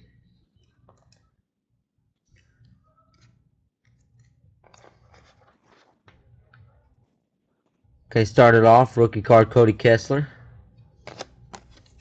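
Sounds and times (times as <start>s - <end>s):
cards and wrappers rustling: 4.6s - 6.2s, 11.0s - 12.0s.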